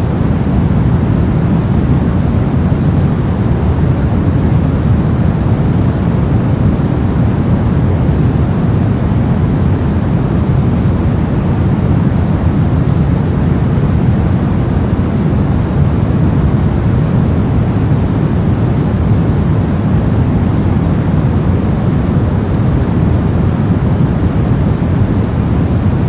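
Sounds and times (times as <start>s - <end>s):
brown noise: 0.0s - 26.0s.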